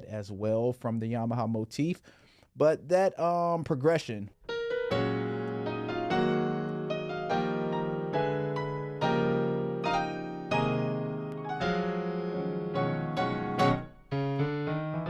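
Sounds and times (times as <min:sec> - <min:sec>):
electric piano gospel chords: 0:04.5 - 0:15.0.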